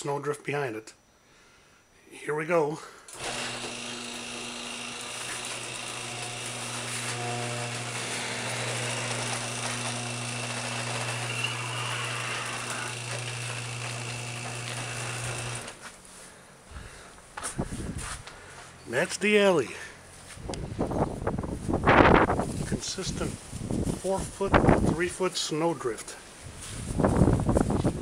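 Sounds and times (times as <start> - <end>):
garage door opener motor hum: 3.1 - 15.9.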